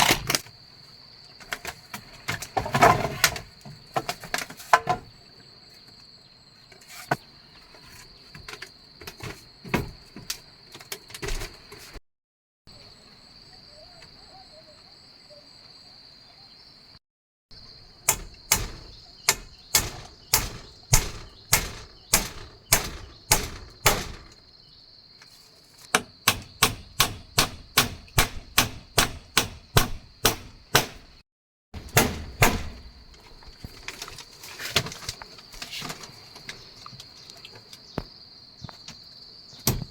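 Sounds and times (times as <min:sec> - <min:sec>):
insects droning: 0:00.0 - 0:12.0, 0:12.7 - 0:31.2, 0:31.8 - 0:39.9
hand tool striking wood: 0:18.0 - 0:24.4, 0:25.9 - 0:31.2, 0:31.8 - 0:33.0.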